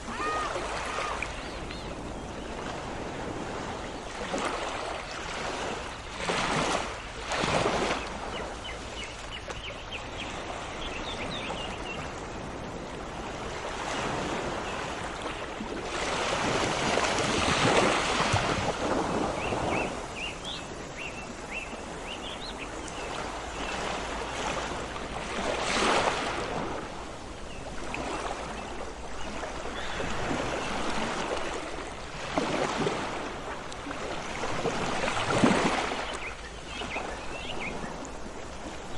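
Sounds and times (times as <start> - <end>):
sea waves washing onto shore: 0.0 - 38.9
small birds chirping: 0.3 - 2.7, 19.4 - 24.4.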